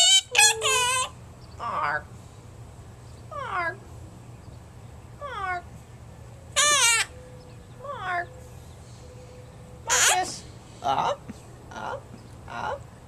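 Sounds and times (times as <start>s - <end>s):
parrot calls: 0.0s - 2.0s, 6.6s - 7.2s, 9.8s - 12.8s.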